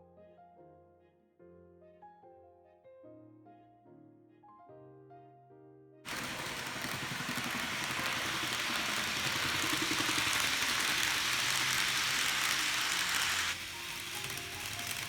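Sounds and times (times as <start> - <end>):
model train running on track: 6.1 - 15.0.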